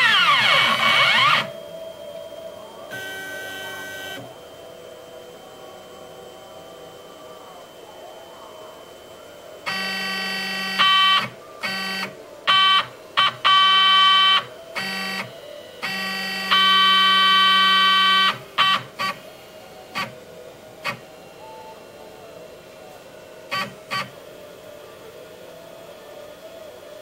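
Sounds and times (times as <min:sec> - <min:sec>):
stepper motors whining: 0:00.0 - 0:01.8.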